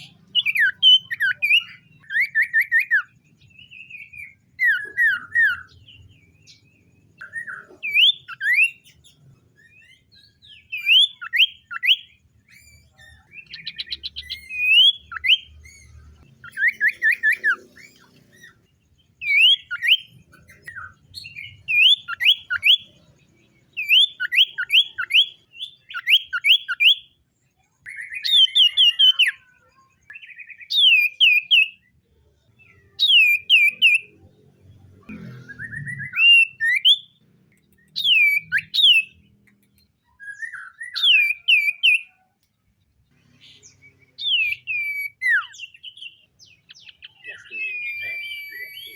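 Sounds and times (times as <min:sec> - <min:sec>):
bird whistling downward phrases: 0:09.6 - 0:17.8, 0:19.2 - 0:22.9, 0:35.6 - 0:37.2, 0:38.0 - 0:39.2, 0:40.1 - 0:42.2, 0:43.6 - 0:48.9.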